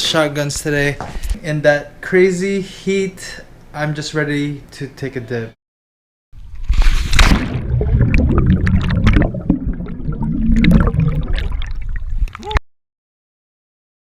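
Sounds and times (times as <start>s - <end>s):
water splashing and gurgling: 6.4s - 12.6s.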